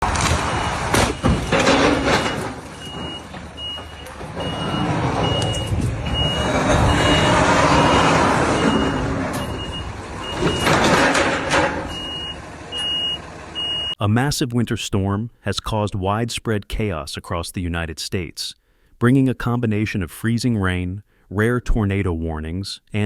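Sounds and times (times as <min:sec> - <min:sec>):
engine and road noise: 0:00.0 - 0:14.0
reversing alarm beeping: 0:00.4 - 0:10.8, 0:11.8 - 0:14.0.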